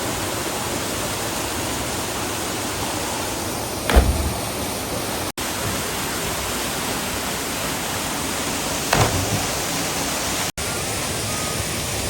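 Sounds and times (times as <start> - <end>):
sudden thump: 3.9 - 5.3, 8.9 - 9.7.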